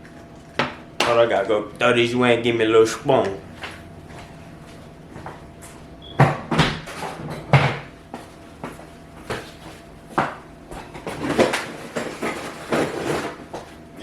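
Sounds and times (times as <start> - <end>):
cabinet knocks and bangs: 6.2 - 7.9.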